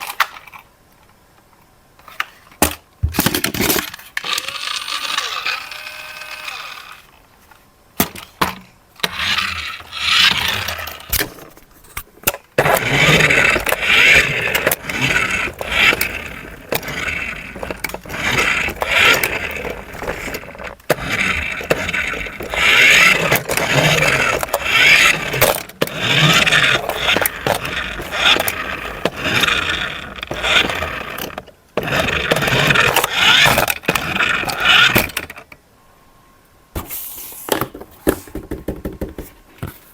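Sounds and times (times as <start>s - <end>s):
toy electric motors whirring: 3.2s - 7.2s, 9.0s - 11.5s, 12.6s - 35.4s
plastic clicks and scraping: 7.5s - 35.6s.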